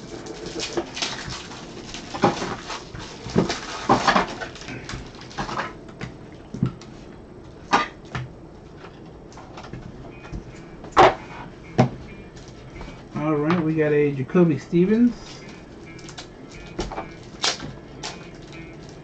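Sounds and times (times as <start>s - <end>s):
card packs clicking and rustling: 0.0s - 5.8s, 15.2s - 19.0s.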